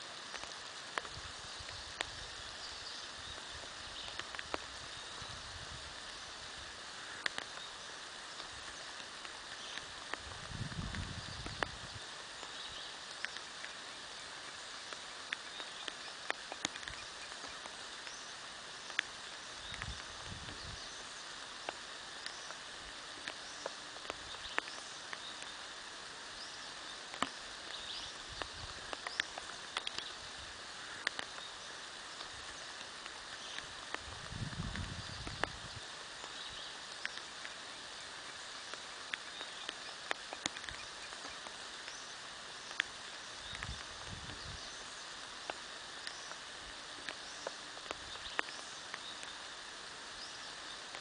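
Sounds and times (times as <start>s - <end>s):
birds chirping: 0.0s - 51.0s
light rain hiss: 0.0s - 51.0s
water drips tapping: 4.0s - 4.7s, 7.2s - 7.7s, 14.9s - 18.2s, 23.2s - 25.6s, 27.0s - 30.2s, 31.0s - 31.5s.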